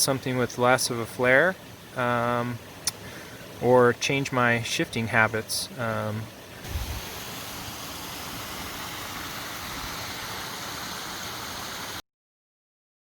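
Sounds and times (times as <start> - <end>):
wind rushing over microphone: 6.6 - 7.3.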